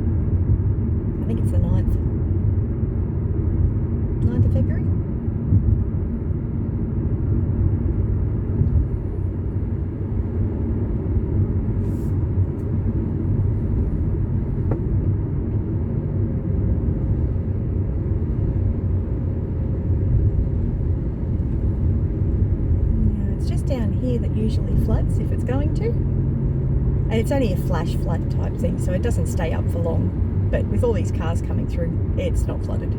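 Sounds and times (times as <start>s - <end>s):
car cabin road and engine noise: 0.0s - 32.9s.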